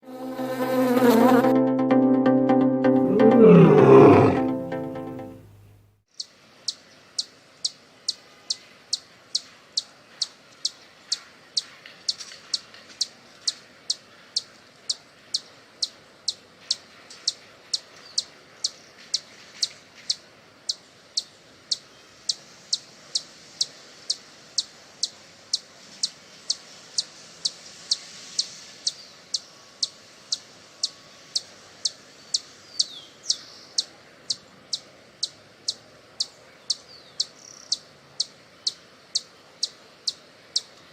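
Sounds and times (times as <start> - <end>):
hummingbird chip calls: 3.1 - 4.6, 30.8 - 40.7.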